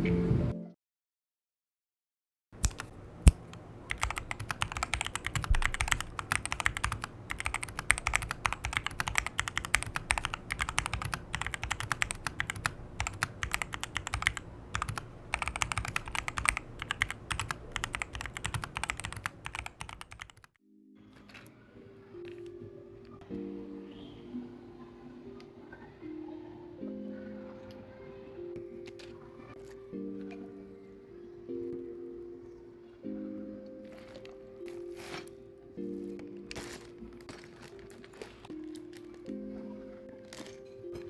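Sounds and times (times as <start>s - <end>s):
mechanical keyboard typing: 2.6s - 20.6s.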